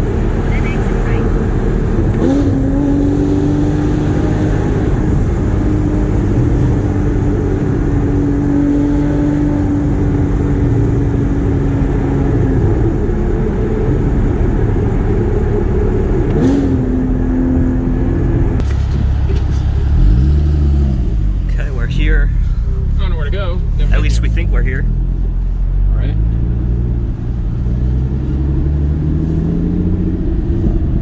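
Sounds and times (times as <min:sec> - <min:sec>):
car engine revving while driving: 0:00.0 - 0:31.0
low road rumble: 0:00.0 - 0:31.0.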